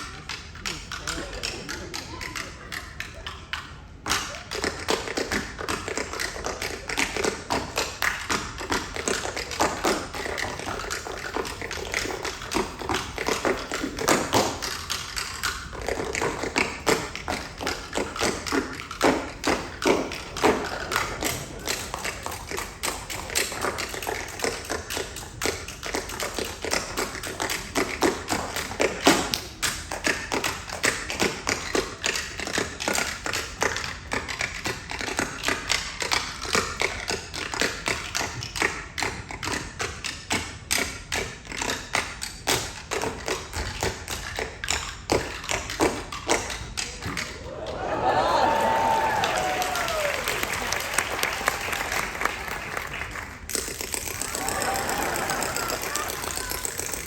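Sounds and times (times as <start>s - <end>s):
tap shoes striking a stage: 0.0s - 57.0s.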